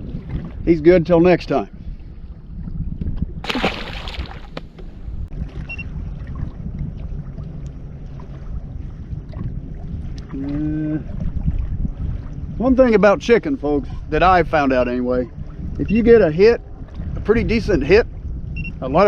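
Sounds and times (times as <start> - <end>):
wind rumble on microphone: 0.0 - 19.0
fish splashing into water: 3.4 - 4.8.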